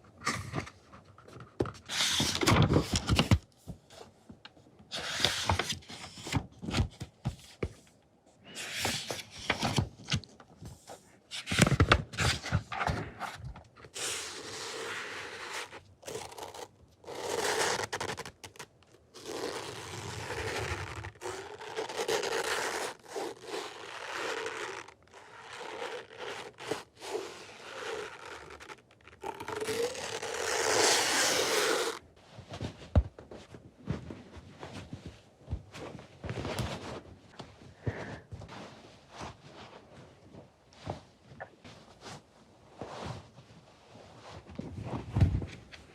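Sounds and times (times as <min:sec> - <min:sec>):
scratching or scraping strokes: 0:19.2 - 0:32.0.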